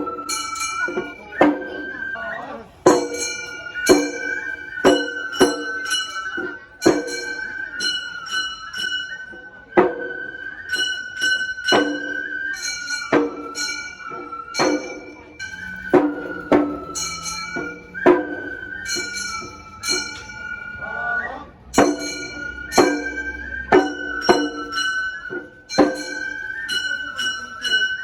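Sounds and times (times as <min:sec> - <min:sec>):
high transverse flute: 0:00.0 - 0:28.0
drum: 0:02.8 - 0:09.1, 0:09.8 - 0:20.4, 0:21.7 - 0:28.0
small hand gongs striking: 0:14.1 - 0:20.5.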